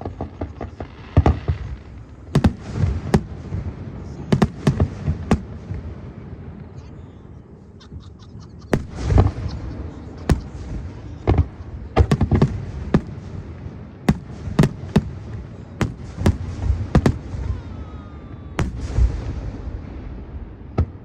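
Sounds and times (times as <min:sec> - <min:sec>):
fireworks bangs: 0:00.0 - 0:07.0, 0:07.6 - 0:21.0
low rumble: 0:08.8 - 0:21.0.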